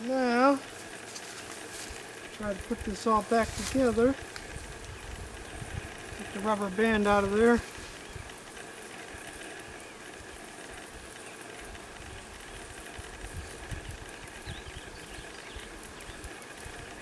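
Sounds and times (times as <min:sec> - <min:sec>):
bees buzzing: 0:00.0 - 0:17.0
low rumbles: 0:00.6 - 0:08.6.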